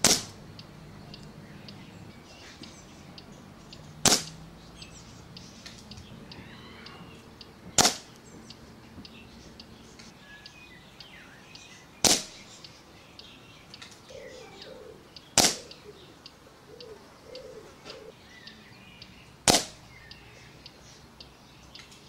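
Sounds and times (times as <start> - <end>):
air rifle shots: 0.0 - 0.4, 4.0 - 4.4, 7.7 - 8.2, 12.0 - 12.4, 15.4 - 15.7, 19.4 - 19.8.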